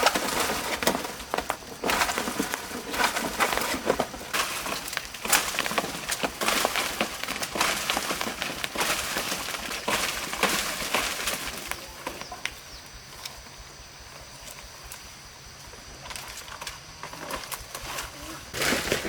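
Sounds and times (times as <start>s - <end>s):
rustling crackling handling noises: 0.0s - 12.5s.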